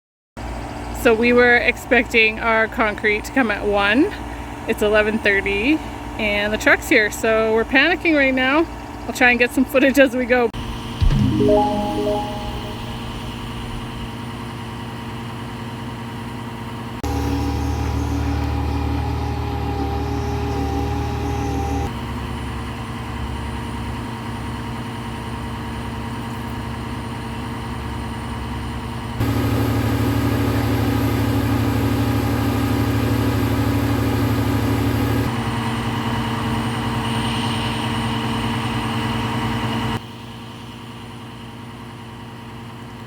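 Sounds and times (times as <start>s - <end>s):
diesel engine running: 17.1s - 21.8s.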